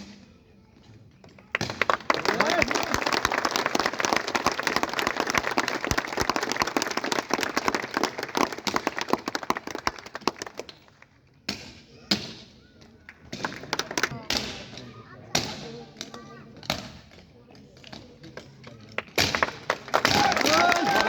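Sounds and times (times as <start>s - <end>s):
voices: 2.1s - 3.0s, 20.0s - 21.0s.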